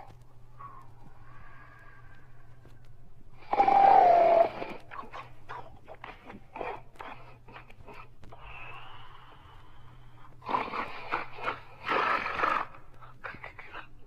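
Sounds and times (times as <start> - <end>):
person snoring with wheezy whistle: 3.4 - 5.1, 10.4 - 12.8.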